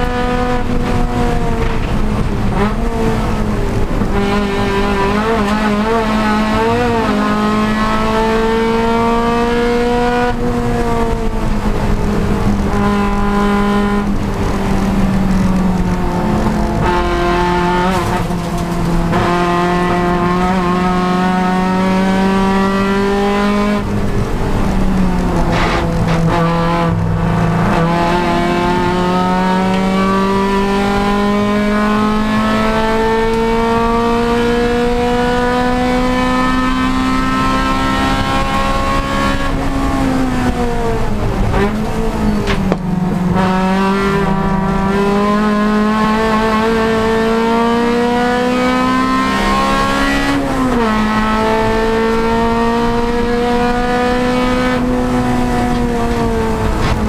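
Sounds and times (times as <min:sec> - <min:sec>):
race car engine revving: 0:00.0 - 0:57.0.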